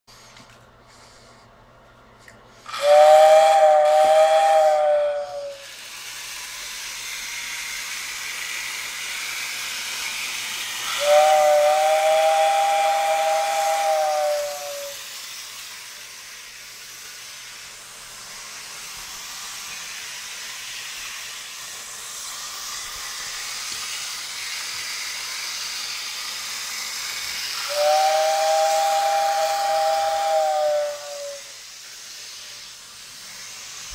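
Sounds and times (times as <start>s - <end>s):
steam hiss: 2.5s - 33.9s
two-tone steam whistle blasts: 2.6s - 5.9s, 10.1s - 15.2s, 26.1s - 32.8s.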